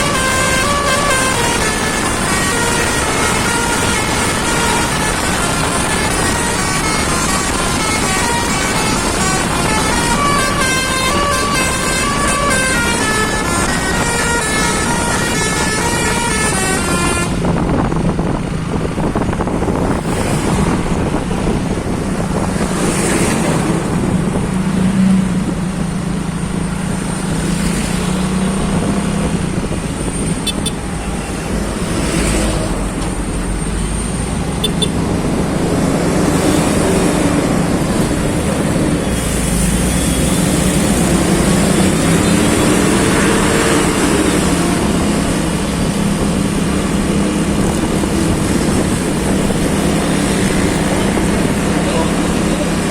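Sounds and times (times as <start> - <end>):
multi-tone bus horn: 0.0 - 17.9, 29.4 - 33.0, 33.6 - 35.2, 36.2 - 52.9
road traffic engine hum: 0.0 - 52.9
vehicles passing whooshes: 0.0 - 52.9.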